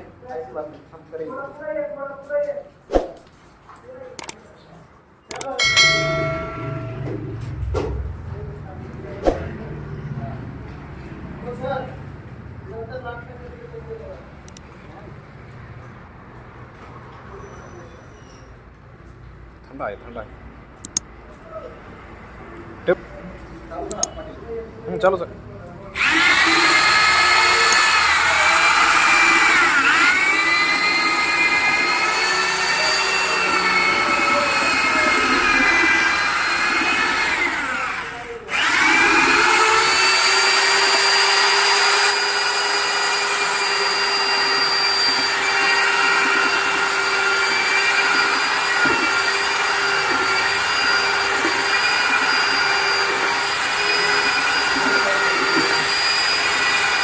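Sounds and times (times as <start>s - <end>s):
angle grinder whining: 5.6s - 7.7s, 26.0s - 57.0s.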